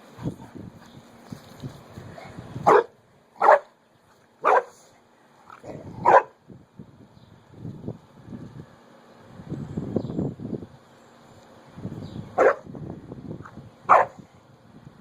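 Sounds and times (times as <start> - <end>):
dog barking: 2.7 - 3.7, 4.4 - 4.8, 6.0 - 6.4, 12.4 - 12.7, 13.9 - 14.2.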